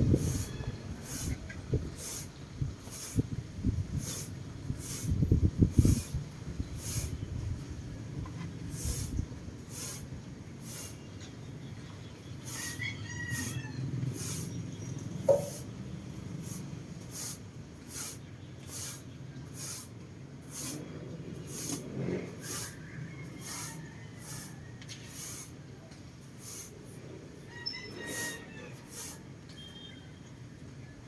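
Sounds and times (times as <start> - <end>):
broom sweeping: 0.0 - 3.3, 3.9 - 7.2, 8.6 - 11.1, 12.4 - 14.6, 15.3 - 15.7, 16.3 - 25.6, 26.2 - 27.1, 28.0 - 29.2.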